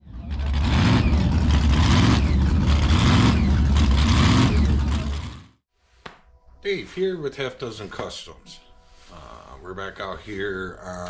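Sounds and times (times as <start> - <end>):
car engine running and revving: 0.0 - 5.6.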